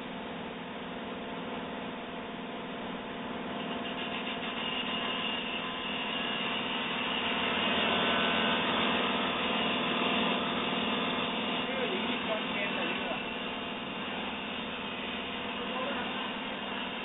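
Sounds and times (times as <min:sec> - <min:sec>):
drill machine humming: 0:00.0 - 0:17.0.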